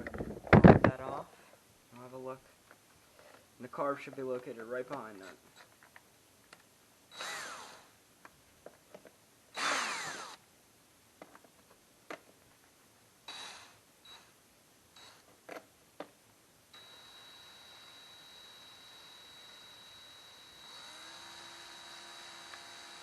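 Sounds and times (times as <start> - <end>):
small clicks and knocks: 8.2 - 9.2, 11.2 - 12.7
faint high whine: 13.2 - 15.3, 16.6 - 23.0.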